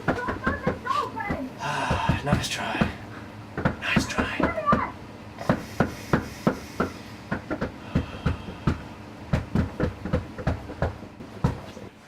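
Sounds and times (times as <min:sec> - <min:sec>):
sharp knocks on hard surface: 0:03.6 - 0:11.6.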